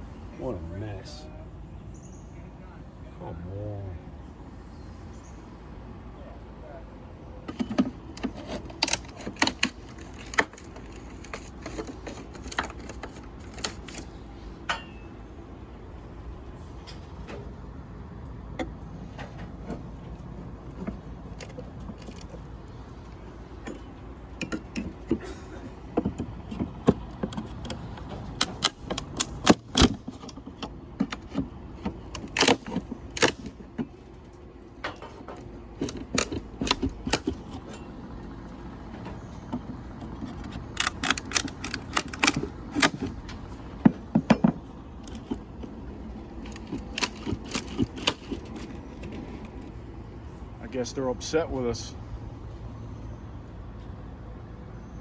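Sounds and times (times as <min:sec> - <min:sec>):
low outdoor rumble: 0:00.0 - 0:55.0
boards being pried loose: 0:24.4 - 0:33.9, 0:34.9 - 0:37.8, 0:39.1 - 0:49.6.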